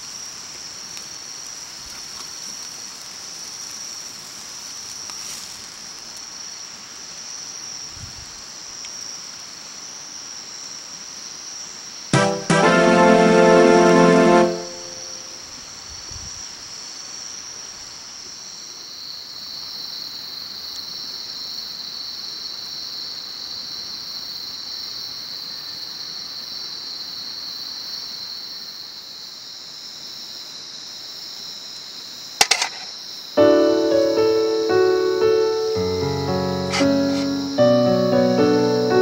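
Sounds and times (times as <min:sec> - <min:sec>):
insects chirring: 0:00.0 - 0:12.1, 0:13.2 - 0:39.0
faint steady hiss: 0:00.0 - 0:39.0
piano music: 0:12.2 - 0:15.4, 0:33.4 - 0:39.0
sharp click: 0:32.4 - 0:32.9.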